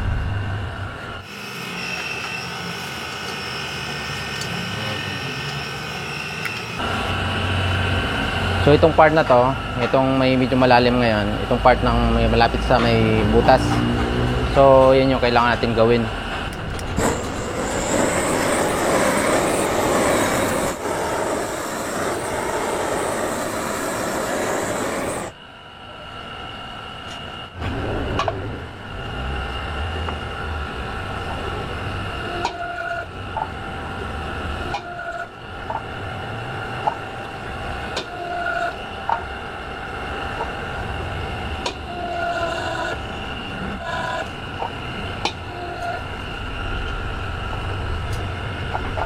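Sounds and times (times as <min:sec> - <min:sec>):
loud even rushing noise: 0:00.0 - 0:01.4
machine whine with low rumble: 0:00.0 - 0:49.0.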